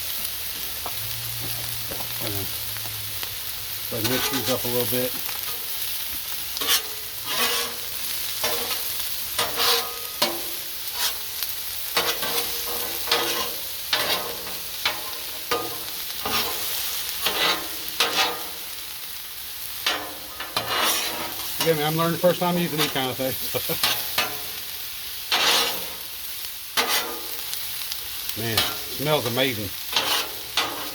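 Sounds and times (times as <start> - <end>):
food sizzling on a griddle: 0.0 - 30.9
utensil scraping on steel: 3.9 - 4.9, 6.6 - 18.6, 19.8 - 23.2, 25.3 - 26.0, 26.8 - 27.4, 28.4 - 30.9.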